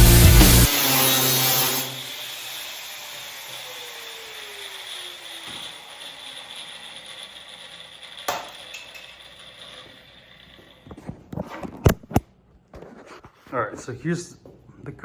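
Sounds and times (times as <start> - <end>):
angle grinder whine: 0.0 - 11.2.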